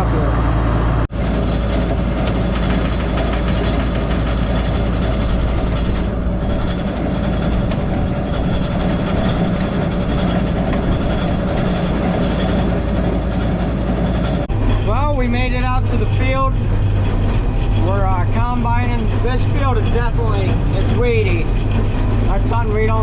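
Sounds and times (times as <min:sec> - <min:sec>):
heavy vehicle engine running: 0:00.0 - 0:23.0
rattling noise: 0:01.1 - 0:23.0.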